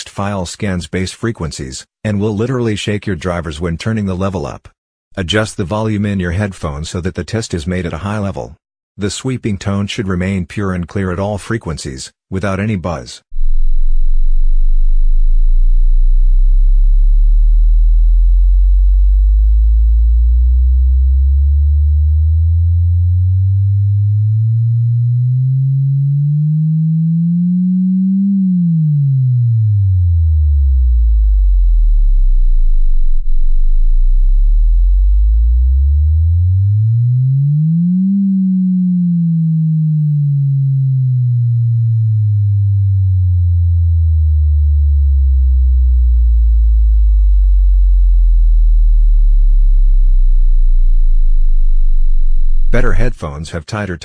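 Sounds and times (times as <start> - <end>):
bass sine-wave sweep tone: 13.4 - 53.4.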